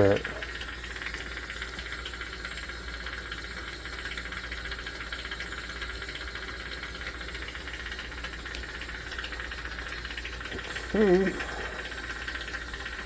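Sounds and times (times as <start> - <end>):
constant low hum: 0.0 - 13.0
torch flame hissing: 5.0 - 13.0.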